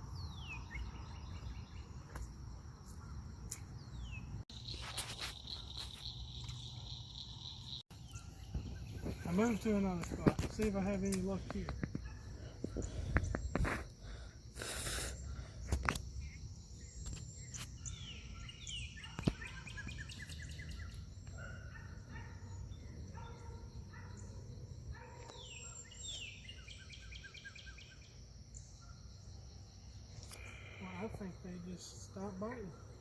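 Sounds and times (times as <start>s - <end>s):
birds singing: 0.0s - 33.0s
insects droning: 0.0s - 33.0s.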